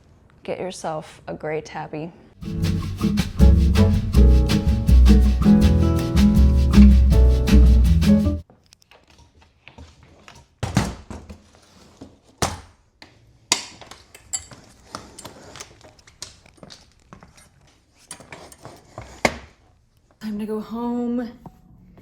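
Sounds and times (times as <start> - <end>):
objects clattering and knocking: 13.5 - 19.6.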